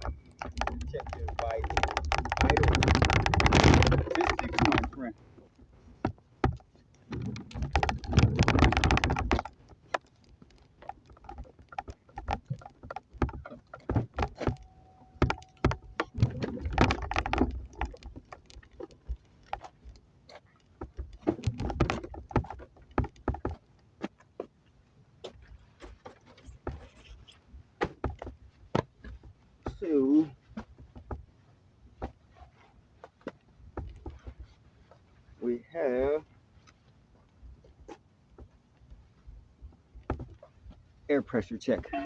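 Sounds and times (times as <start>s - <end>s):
objects clicking and rattling: 0.0s - 5.2s, 6.0s - 23.6s
noisy rustling: 0.0s - 42.0s.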